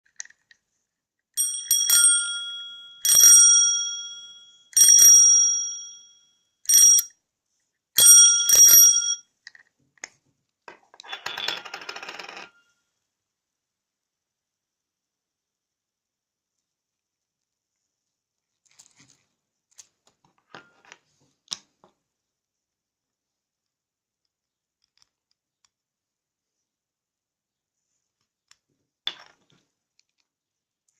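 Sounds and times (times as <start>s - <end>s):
bicycle bell ringing: 1.4s - 7.1s, 8.0s - 9.2s.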